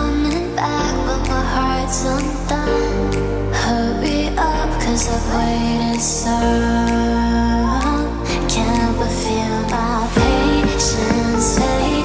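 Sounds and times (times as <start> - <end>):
background music with steady pulse: 0.0 - 12.0.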